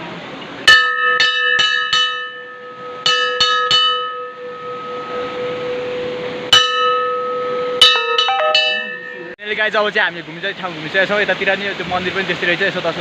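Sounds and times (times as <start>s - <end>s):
brass bell ringing: 7.8s - 9.4s.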